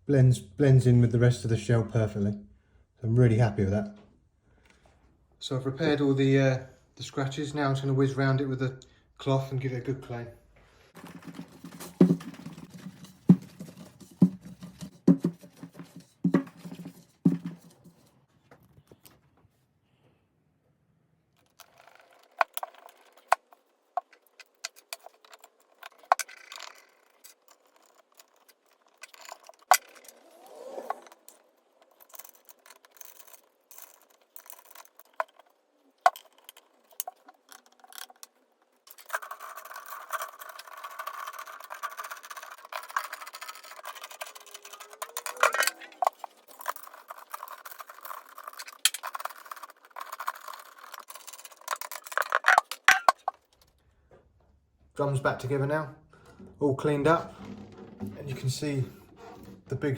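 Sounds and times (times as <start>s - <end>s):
clicks and knocks on drum hardware: 57.2s - 59.7s.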